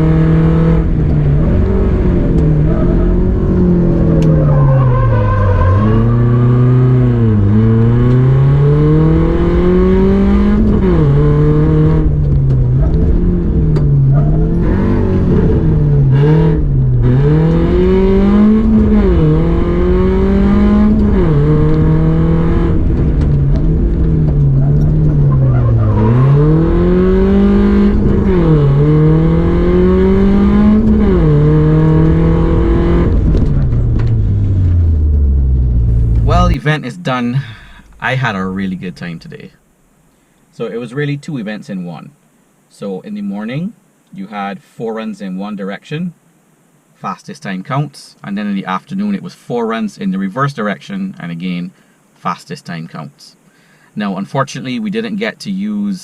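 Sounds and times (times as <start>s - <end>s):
rally car engine revving: 0.0s - 39.2s.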